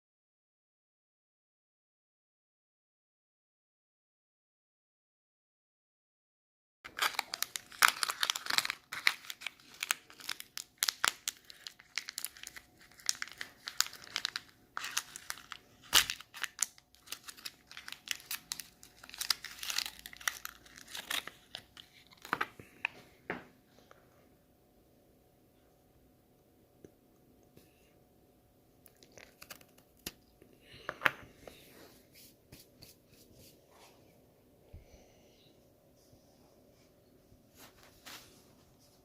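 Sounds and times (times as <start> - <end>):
wrapper crinkling and tearing: 6.9 - 22.6, 28.9 - 30.3.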